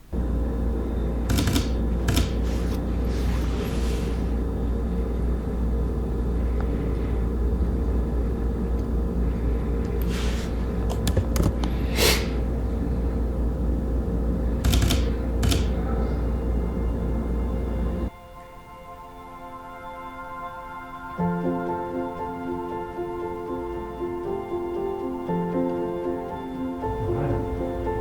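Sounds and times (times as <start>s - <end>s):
low hum: 0.0s - 18.1s, 26.8s - 28.0s.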